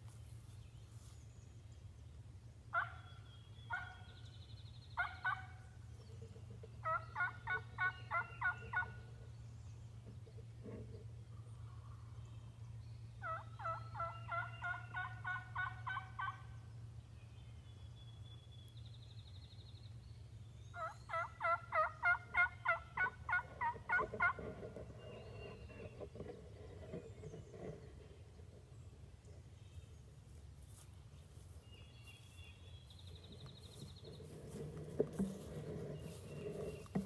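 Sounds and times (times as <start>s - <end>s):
turkey yelps: 2.8s - 3.1s, 3.7s - 4.0s, 5.0s - 5.6s, 6.8s - 9.0s, 13.2s - 16.4s, 20.8s - 24.5s.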